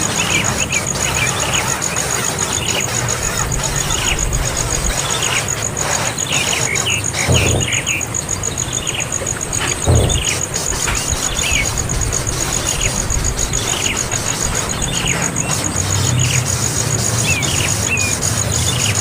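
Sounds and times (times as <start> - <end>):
high-pitched pulsing and hiss: 0.0 - 19.0
young bird chirping: 0.2 - 15.6
dull knocks: 2.7 - 15.3.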